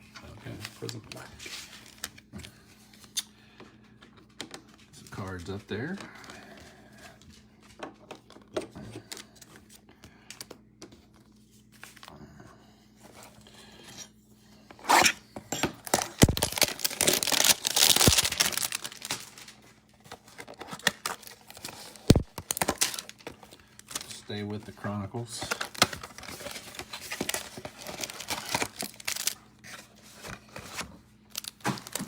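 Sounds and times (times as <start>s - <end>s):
cards clicking and tapping: 15.6s - 19.2s, 20.6s - 23.4s
wrappers tearing and crinkling: 15.8s - 24.3s, 25.3s - 32.0s.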